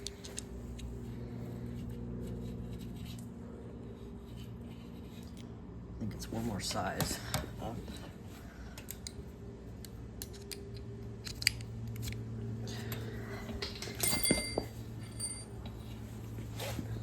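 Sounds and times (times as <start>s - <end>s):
steady low hum: 0.0s - 17.0s
metal hand tools clinking: 13.7s - 15.6s
short metallic ring: 14.0s - 15.6s.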